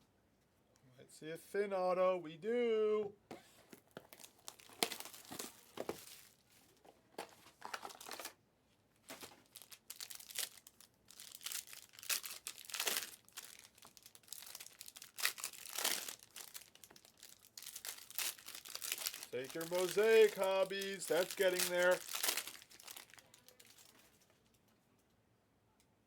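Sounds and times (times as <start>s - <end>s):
card pack wrappers crinkling and tearing: 4.0s - 6.4s, 7.2s - 8.4s, 9.1s - 24.2s.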